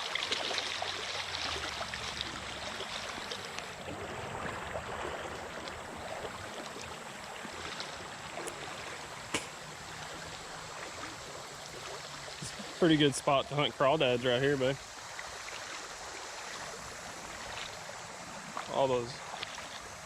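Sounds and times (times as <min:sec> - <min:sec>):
water trickling over rocks: 0:00.0 - 0:20.0.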